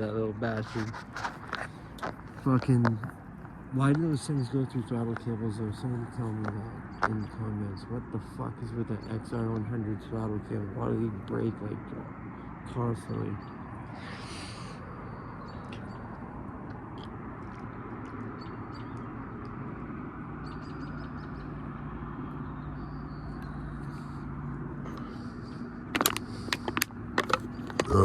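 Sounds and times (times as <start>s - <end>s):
outdoor background noise: 0.0s - 28.0s
small birds chirping: 0.0s - 28.0s
sharp clicks and knocks: 25.9s - 27.9s.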